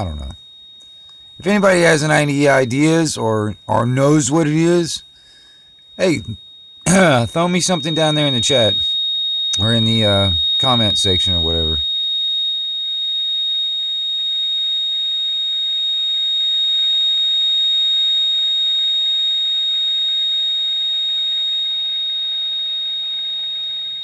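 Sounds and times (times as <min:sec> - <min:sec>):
steady high-pitched radio tone: 0:00.0 - 0:00.4, 0:01.4 - 0:05.0, 0:06.0 - 0:09.0, 0:09.6 - 0:11.8
faint static hiss: 0:00.0 - 0:08.9.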